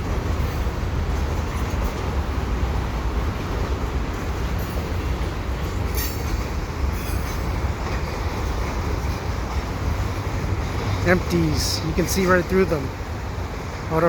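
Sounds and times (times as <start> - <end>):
train wheels rumbling on rails: 0.0 - 14.0
high wheel squeals: 6.0 - 7.6.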